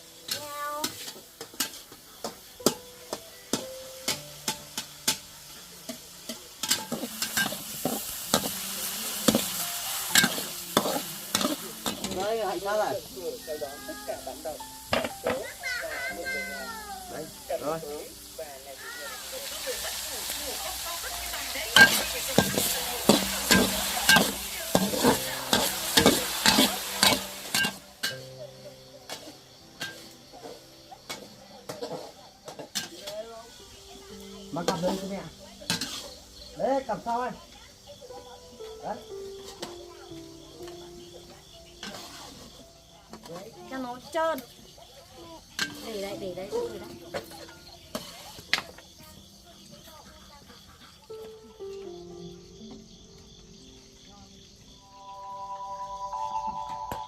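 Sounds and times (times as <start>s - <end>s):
frying sizzle: 0.0s - 51.8s
spatula scraping a pan: 0.3s - 2.8s, 3.5s - 12.2s, 19.4s - 28.2s, 29.1s - 33.1s, 35.7s - 36.3s, 41.8s - 43.3s, 47.2s - 48.5s
utensil clinking against pan: 10.1s - 12.2s, 21.8s - 28.2s.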